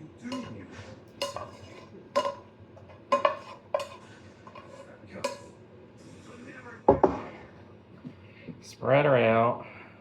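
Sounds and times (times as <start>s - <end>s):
metal utensil knocking on dish: 0.3s - 0.6s, 1.2s - 5.5s.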